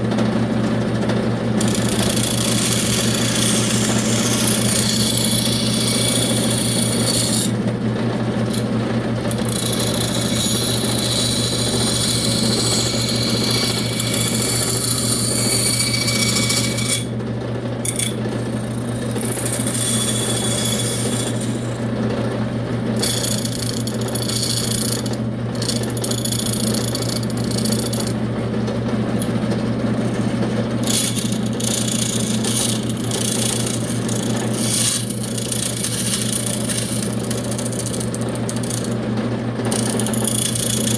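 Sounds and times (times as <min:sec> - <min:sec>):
motor hum: 0:00.0 - 0:40.9
power tool cutting wood: 0:01.5 - 0:07.8, 0:08.4 - 0:17.2, 0:17.8 - 0:22.0, 0:22.8 - 0:28.2, 0:29.2 - 0:40.9.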